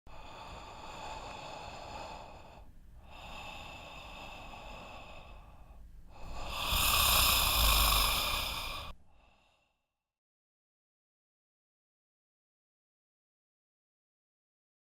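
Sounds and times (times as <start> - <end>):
person snoring: 0.1 - 9.4.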